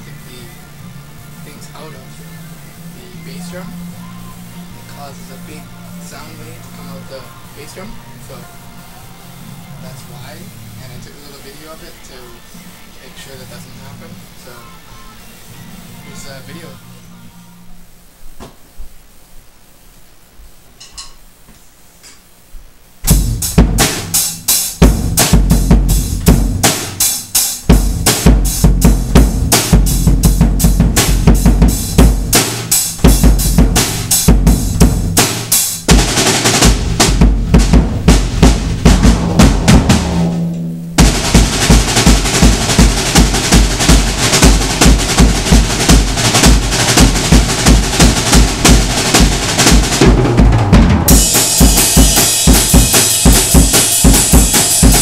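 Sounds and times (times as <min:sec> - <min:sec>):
drum kit played hard: 0:00.0 - 0:08.6, 0:09.4 - 0:16.8, 0:23.0 - 0:55.0
booming bass drum kicks: 0:23.0 - 0:24.2, 0:24.8 - 0:27.0, 0:27.7 - 0:55.0
cymbals crashing: 0:23.1 - 0:55.0.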